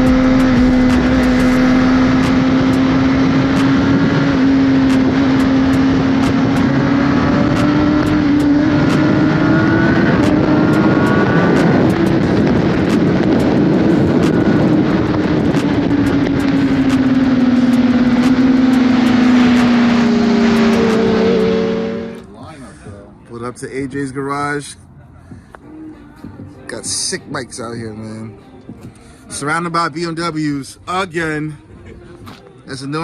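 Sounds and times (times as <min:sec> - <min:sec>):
motorcycle engine running: 0:00.0 - 0:22.2
rushing noise: 0:00.0 - 0:22.2.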